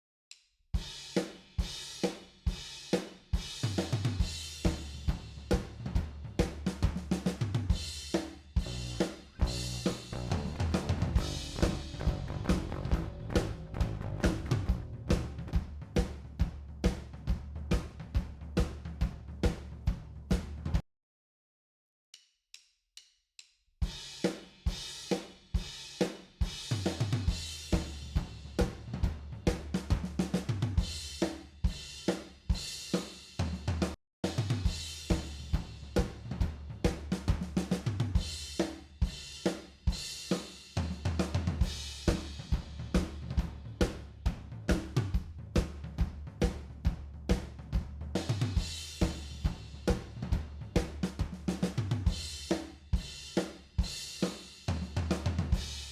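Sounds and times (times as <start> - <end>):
drum kit playing fast groove: 0.8 - 20.8, 23.8 - 55.9
bass line: 8.6 - 16.1.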